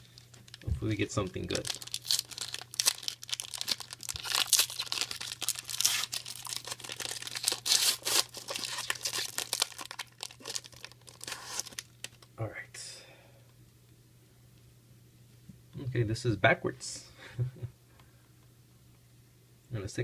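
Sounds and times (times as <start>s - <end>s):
wrapper tearing and crinkling: 0.0s - 12.3s.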